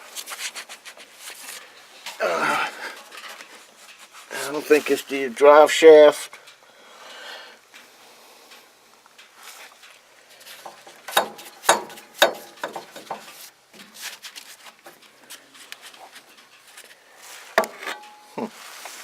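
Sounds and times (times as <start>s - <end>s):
metal parts knocking and clanking: 10.6s - 13.5s.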